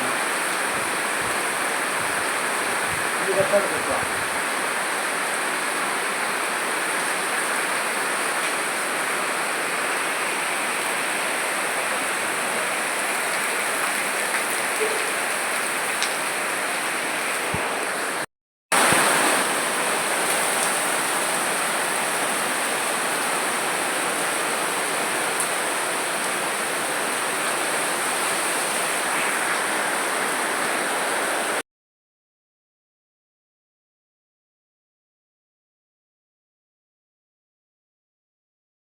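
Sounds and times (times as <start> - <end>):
steady rain falling: 0.0 - 31.6.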